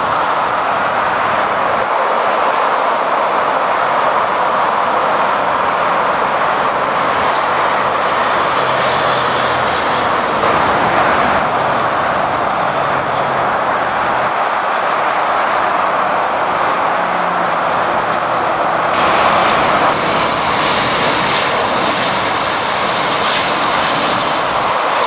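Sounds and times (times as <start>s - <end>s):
jet engines roaring: 0.0s - 25.0s.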